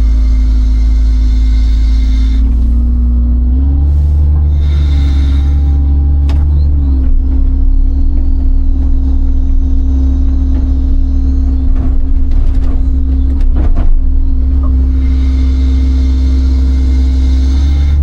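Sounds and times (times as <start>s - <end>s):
excavator diesel engine running: 0.0s - 18.0s
knocks and clanks: 4.1s - 18.0s.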